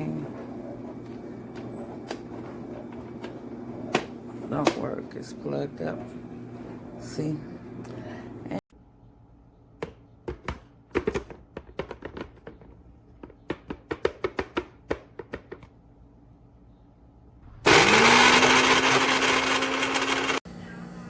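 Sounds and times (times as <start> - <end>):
blender motor whining: 17.6 - 20.4.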